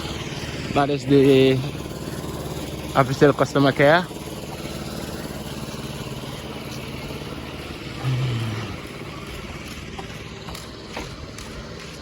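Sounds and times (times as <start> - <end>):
road traffic: 0.0 - 12.0
vehicle engine running: 0.0 - 12.0
loud low hum: 7.4 - 9.8.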